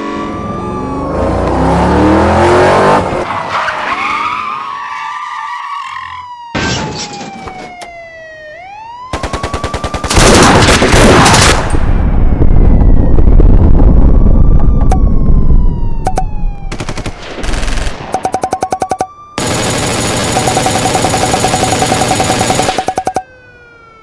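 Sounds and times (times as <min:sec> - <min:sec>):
police siren wailing: 0:00.0 - 0:10.1, 0:12.0 - 0:16.8, 0:20.5 - 0:24.0
machine-gun fire: 0:09.1 - 0:11.9, 0:16.7 - 0:18.2, 0:19.4 - 0:23.1
dense gunfire: 0:09.1 - 0:12.5, 0:16.7 - 0:18.2, 0:19.4 - 0:23.0.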